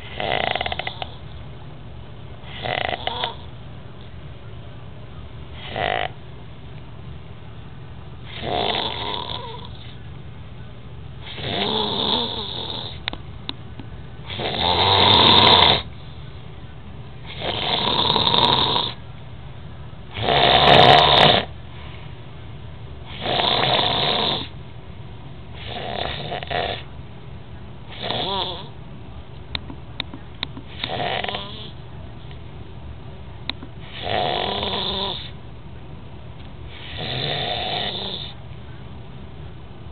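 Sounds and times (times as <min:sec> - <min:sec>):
pet snoring: 0:00.0 - 0:01.2, 0:02.4 - 0:03.5, 0:05.6 - 0:06.2, 0:08.3 - 0:09.9, 0:11.2 - 0:13.0, 0:14.3 - 0:15.9, 0:17.3 - 0:19.0, 0:20.1 - 0:21.5, 0:23.1 - 0:24.5, 0:25.6 - 0:26.9, 0:27.9 - 0:28.7, 0:30.7 - 0:31.8, 0:33.8 - 0:35.4, 0:36.7 - 0:38.4.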